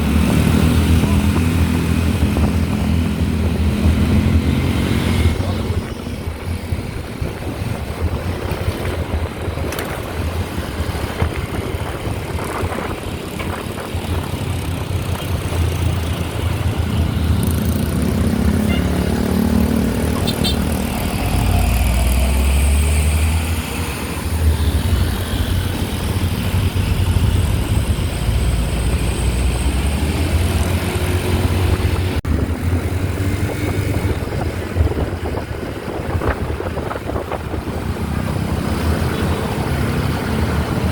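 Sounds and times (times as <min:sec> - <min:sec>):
road vehicle engines rumbling: 0:00.0 - 0:40.9.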